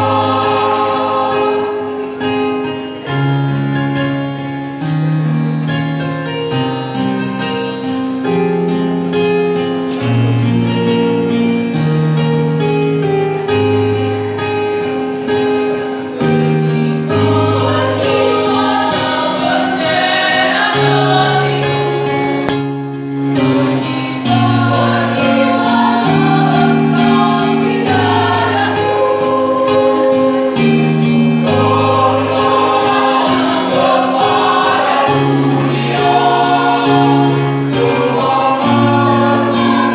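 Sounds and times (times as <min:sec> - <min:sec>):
choir singing: 0:00.0 - 0:03.2, 0:15.8 - 0:22.5, 0:23.3 - 0:39.9
keyboard accompaniment: 0:00.0 - 0:39.9.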